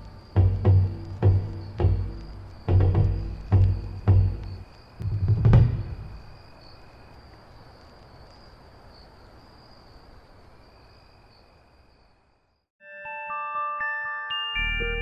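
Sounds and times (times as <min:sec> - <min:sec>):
faint steady hiss: 0:00.0 - 0:12.6
high cricket-like chirring: 0:00.0 - 0:12.6
low drum hit: 0:00.4 - 0:06.2.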